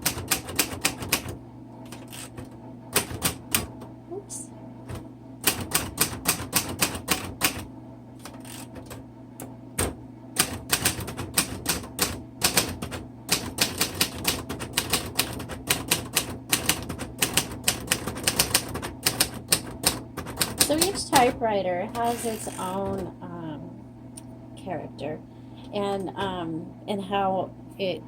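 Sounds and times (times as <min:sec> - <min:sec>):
manual typewriter typing: 0:00.0 - 0:03.8, 0:04.9 - 0:09.0, 0:09.8 - 0:23.1.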